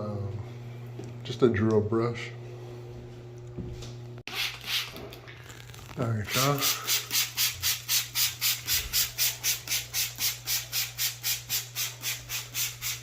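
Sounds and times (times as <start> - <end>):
drill brush scrubbing a surface: 4.3 - 5.0, 6.3 - 13.0.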